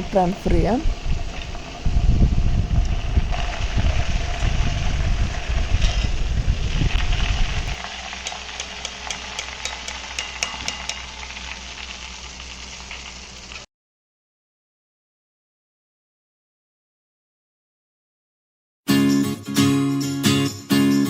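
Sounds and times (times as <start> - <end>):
loud low rumble: 0.0 - 7.8
chips sizzling in oil: 0.0 - 13.7.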